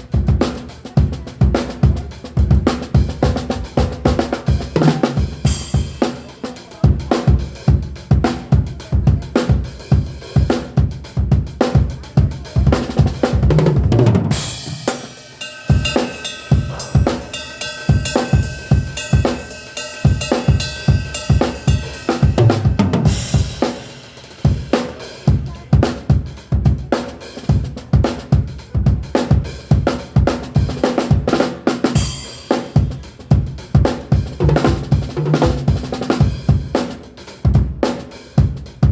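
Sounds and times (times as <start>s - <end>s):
drum kit groove: 0.0s - 38.9s
crash cymbal hit: 14.5s - 22.4s.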